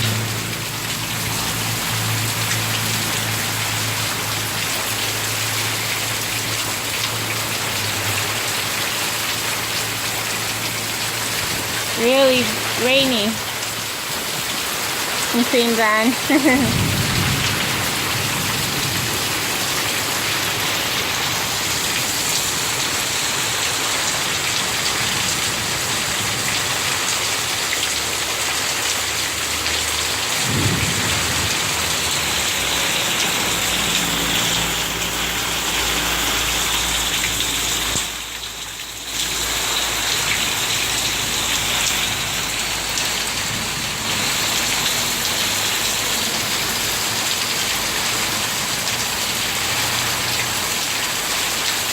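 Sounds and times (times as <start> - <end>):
heavy rain pouring: 0.0 - 51.9
low thunder rumble: 16.4 - 20.4, 30.4 - 33.9.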